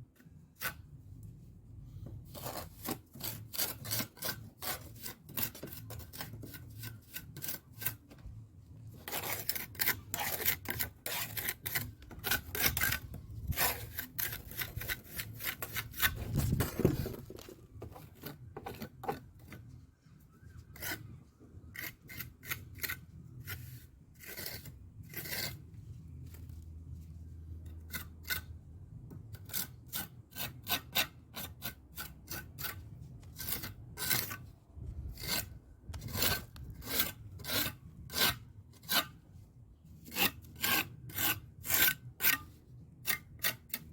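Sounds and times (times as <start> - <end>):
hand tool scraping mortar: 0.2 - 0.9, 2.3 - 8.0, 8.9 - 19.6, 20.7 - 21.0, 21.8 - 25.7, 27.8 - 28.5, 29.4 - 34.4, 35.1 - 39.2, 40.0 - 43.9.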